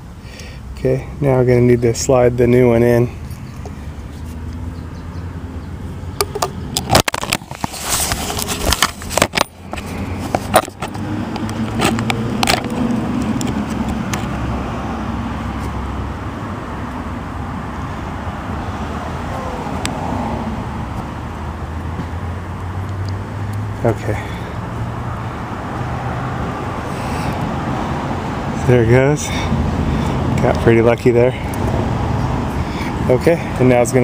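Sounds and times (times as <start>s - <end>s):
motor vehicle rumble: 0.0s - 34.0s
metal clicks and scrapes: 6.2s - 14.3s.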